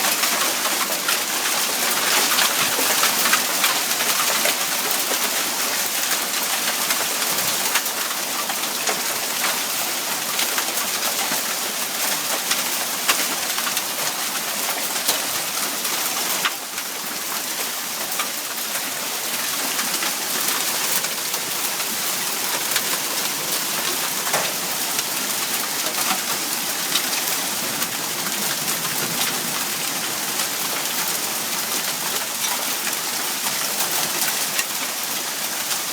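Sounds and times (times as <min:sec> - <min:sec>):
hailstones striking hard surfaces: 0:00.1 - 0:05.4.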